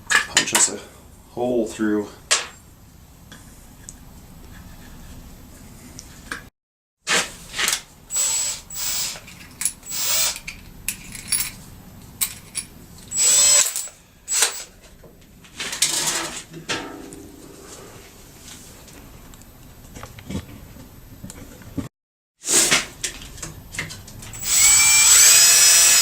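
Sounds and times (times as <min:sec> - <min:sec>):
power drill drilling into metal: 0:08.1 - 0:09.2, 0:09.8 - 0:10.4, 0:13.1 - 0:14.7, 0:24.4 - 0:26.0.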